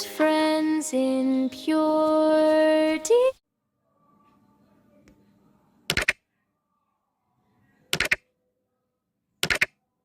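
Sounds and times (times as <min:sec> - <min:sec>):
sharp clicks: 0:05.9 - 0:06.2, 0:07.9 - 0:08.2, 0:09.4 - 0:09.8.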